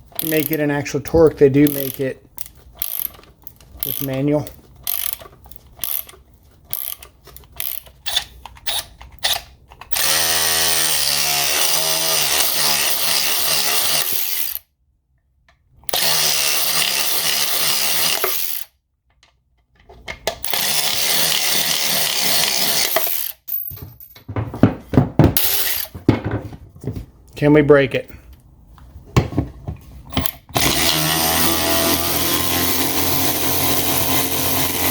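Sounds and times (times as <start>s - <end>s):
cordless ratchet motor running: 0.2s - 0.6s, 1.6s - 4.2s, 4.8s - 8.2s, 15.9s - 18.7s, 20.5s - 23.4s, 30.2s - 34.9s
ratchet clicks: 0.2s - 0.6s, 1.6s - 10.9s.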